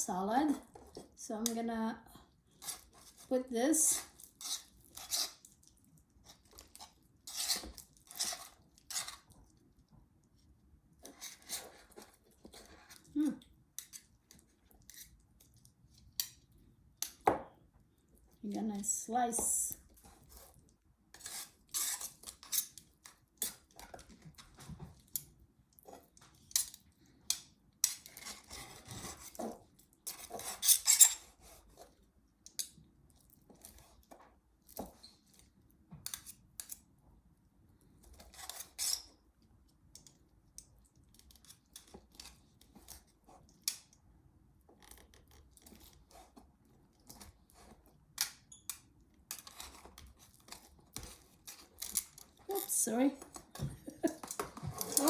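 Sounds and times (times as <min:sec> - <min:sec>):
knife scraping cutting board: 0:03.9 - 0:05.4, 0:06.3 - 0:09.2, 0:19.4 - 0:22.8, 0:28.0 - 0:31.9, 0:53.9 - 0:55.0.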